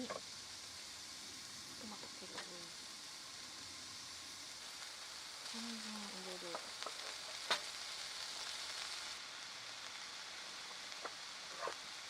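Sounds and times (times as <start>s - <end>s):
food sizzling in a frying pan: 0.0s - 12.0s.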